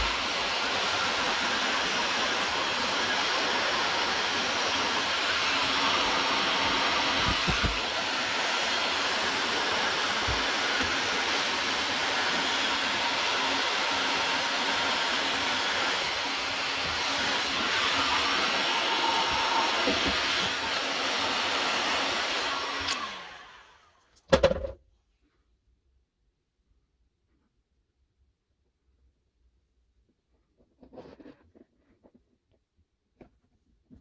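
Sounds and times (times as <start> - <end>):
heat gun blowing: 0.0 - 23.6.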